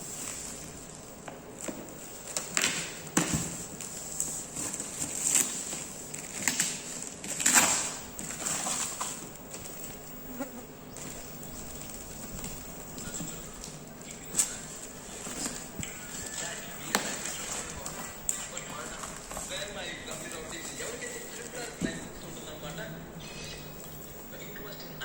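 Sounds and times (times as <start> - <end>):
packaging rustling: 0.0 - 10.2, 11.0 - 22.7.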